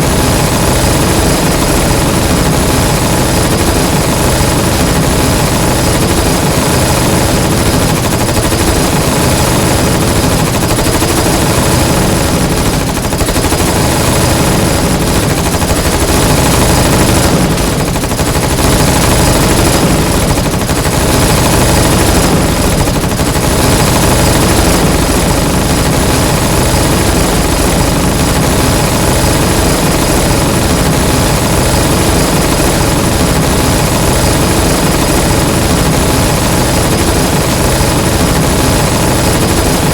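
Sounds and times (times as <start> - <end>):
submachine gun fire: 0.0 - 39.9.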